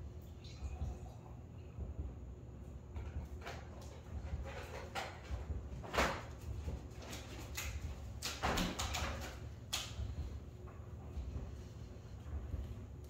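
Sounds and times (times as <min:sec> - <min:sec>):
steady low hum: 0:00.0 - 0:13.0
kitchen items knocking and clacking: 0:03.0 - 0:09.8.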